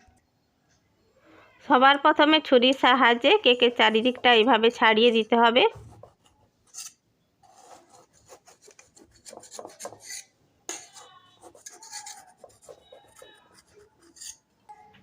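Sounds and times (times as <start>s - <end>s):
knife scraping around cake tin: 5.2s - 14.4s.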